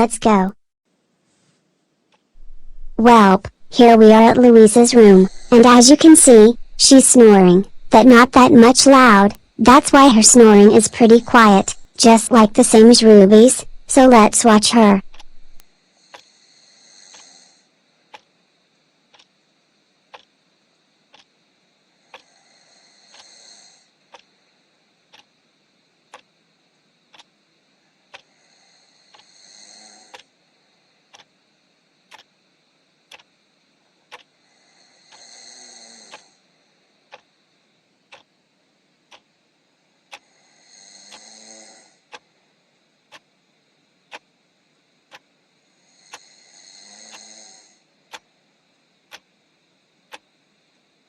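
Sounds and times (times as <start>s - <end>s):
clock ticking: 3.0s - 16.2s, 27.1s - 27.3s, 31.1s - 31.3s, 33.1s - 33.3s, 39.1s - 39.3s
soft snoring: 4.7s - 7.5s, 14.8s - 17.7s, 22.1s - 24.2s, 28.1s - 30.3s, 34.4s - 36.5s, 40.1s - 42.2s, 45.7s - 47.9s.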